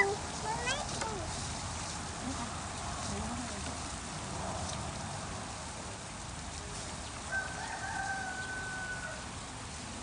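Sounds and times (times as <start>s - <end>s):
rooster crowing: 7.3s - 9.3s.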